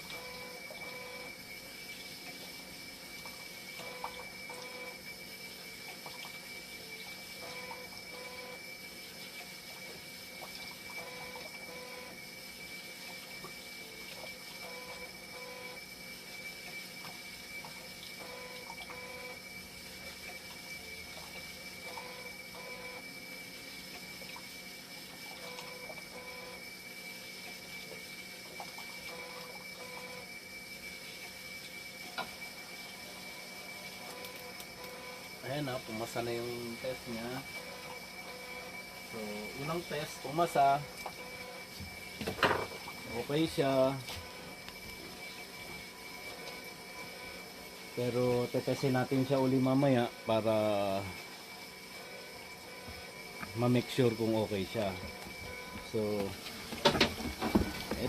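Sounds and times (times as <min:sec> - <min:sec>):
machine high hum: 0:00.0 - 0:58.0
water flowing through machine: 0:00.0 - 0:58.0
two-step mechanical cycle: 0:03.5 - 0:08.7.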